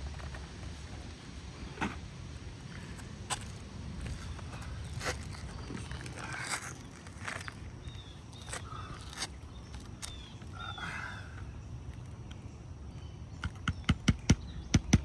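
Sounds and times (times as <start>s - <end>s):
faint bird chirps: 4.2s - 15.0s
clicks and knocks on shingle roof: 13.4s - 15.0s
hammer tapping roofing nail: 13.4s - 15.0s.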